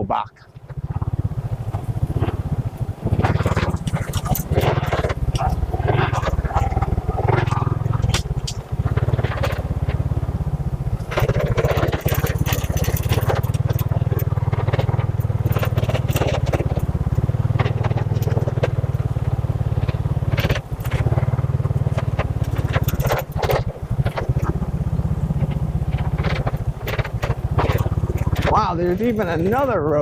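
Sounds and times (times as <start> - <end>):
motorcycle engine running: 0.0 - 30.0
clatters and knocks: 0.4 - 30.0.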